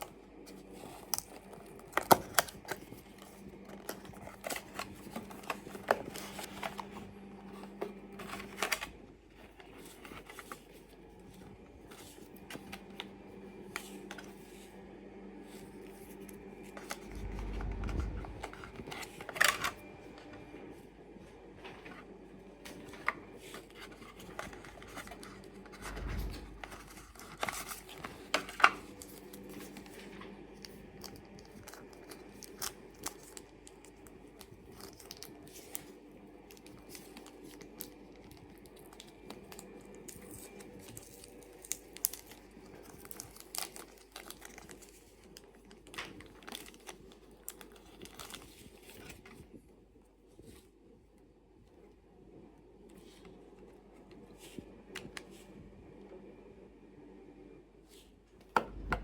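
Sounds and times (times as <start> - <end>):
wrapping tearing and crinkling: 0.0 - 14.4, 22.7 - 49.6
low thump: 25.9 - 26.7.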